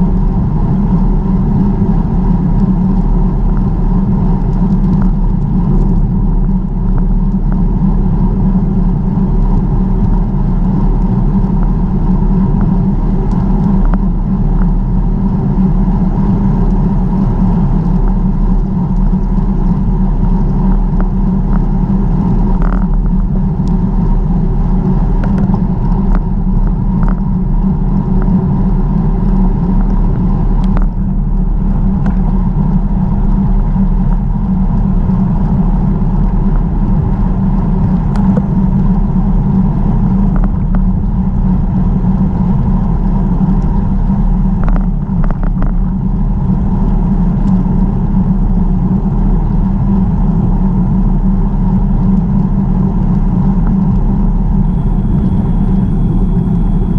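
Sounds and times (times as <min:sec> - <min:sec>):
bicycle tyre noise: 0:00.0 - 0:56.9
wind rumble: 0:00.0 - 0:56.9
faint clicks and ticks: 0:17.8 - 0:23.8, 0:24.9 - 0:28.4, 0:29.2 - 0:39.1, 0:42.8 - 0:47.6.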